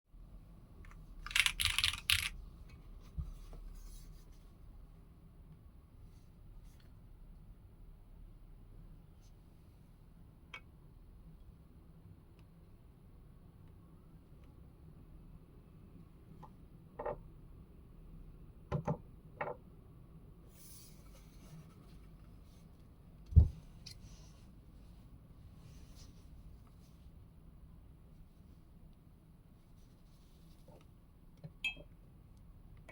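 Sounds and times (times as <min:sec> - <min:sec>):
mechanical keyboard typing: 0:01.2 - 0:02.4.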